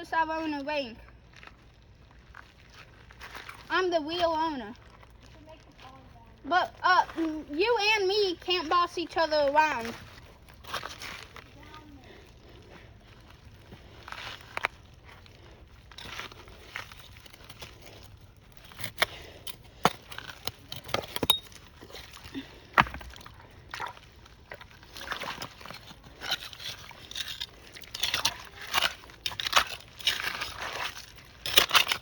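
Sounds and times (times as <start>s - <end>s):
water sloshing: 8.2s - 32.0s
rocks knocking and crunching: 13.1s - 32.0s.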